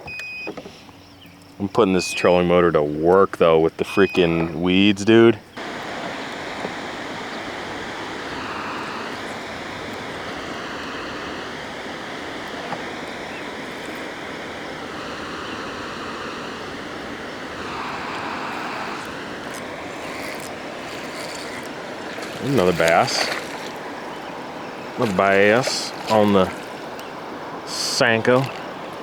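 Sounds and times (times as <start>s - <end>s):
propeller churning water: 0.1s - 29.0s
electric motor whine: 5.6s - 22.6s.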